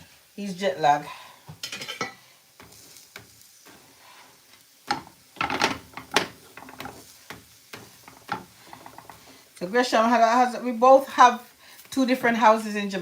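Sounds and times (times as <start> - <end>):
pots and utensils clattering: 1.5 - 2.8, 4.9 - 9.3.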